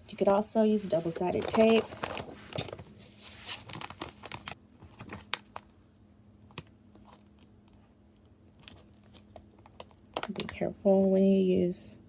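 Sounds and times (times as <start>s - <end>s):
paper and plastic rustling: 0.2s - 5.8s, 6.5s - 7.9s, 8.6s - 10.6s.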